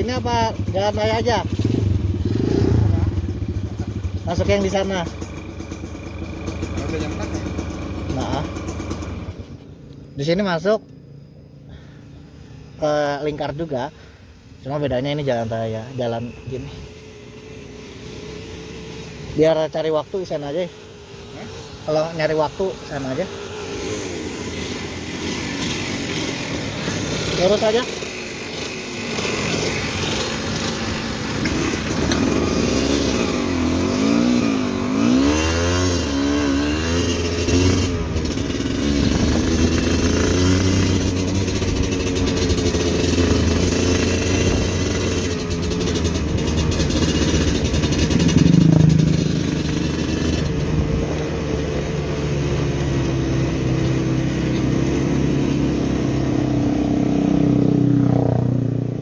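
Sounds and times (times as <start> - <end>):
motorcycle engine revving: 0.0 - 10.2, 14.6 - 59.0
hiss: 16.6 - 19.3.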